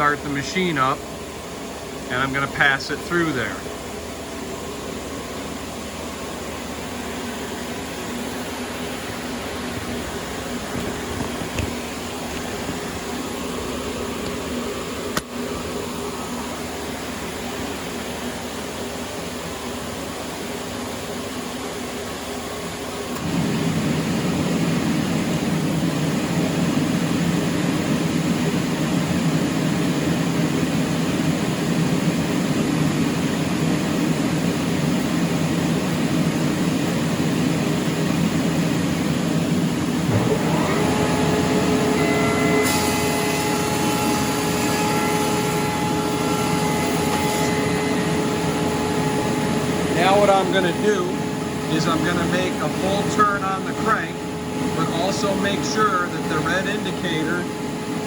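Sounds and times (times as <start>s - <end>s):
steady whine: 0.0s - 58.0s
thickness planer cutting board: 40.0s - 51.2s.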